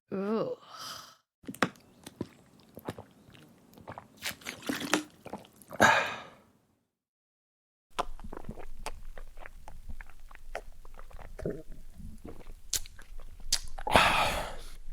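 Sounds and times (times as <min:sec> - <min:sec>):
wet lip smacking: 0:08.0 - 0:13.9.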